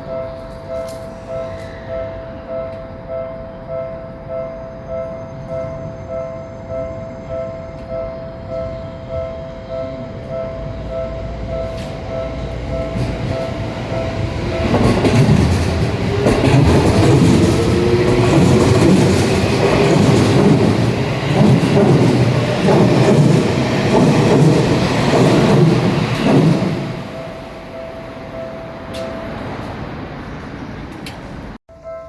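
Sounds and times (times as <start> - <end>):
level-crossing warning bell: 0.0 - 30.7, 31.7 - 32.0
train wheels clattering on rails: 10.0 - 31.5.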